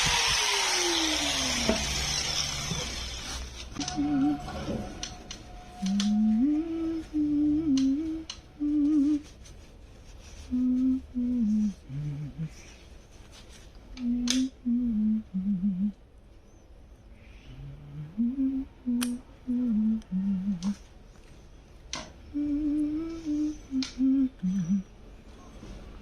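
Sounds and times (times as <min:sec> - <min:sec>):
person humming a slow tune: 0:03.8 - 0:09.6, 0:10.3 - 0:12.7, 0:13.9 - 0:16.0, 0:17.5 - 0:20.9, 0:22.2 - 0:25.0.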